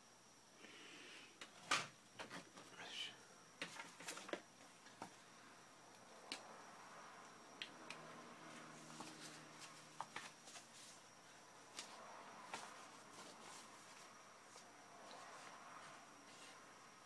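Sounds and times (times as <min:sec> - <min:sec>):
small clicks and rustles at desk: 0:08.9 - 0:11.0.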